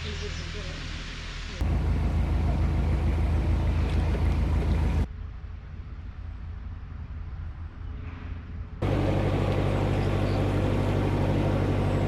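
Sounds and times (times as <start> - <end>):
diesel engine humming: 1.6 - 5.1, 8.8 - 12.0.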